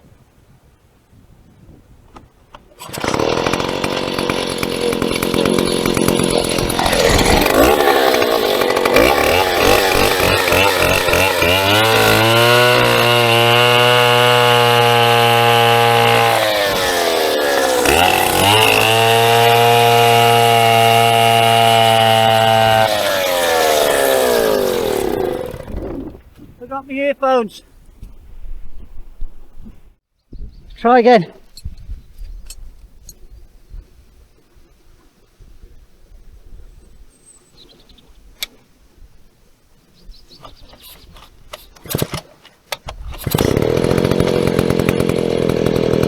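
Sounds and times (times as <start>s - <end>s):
chainsaw cutting wood: 2.5s - 26.3s, 40.8s - 46.0s.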